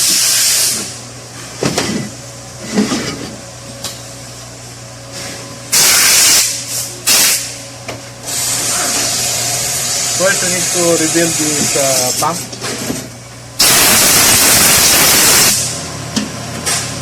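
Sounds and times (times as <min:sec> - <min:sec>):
steady low hum: 0:00.8 - 0:05.8
pressurised hissing spray: 0:13.6 - 0:15.8.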